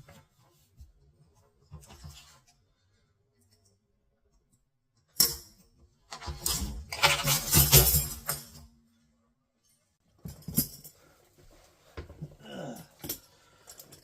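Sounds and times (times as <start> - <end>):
handcuffs rattling and clicking: 12.9 - 14.0.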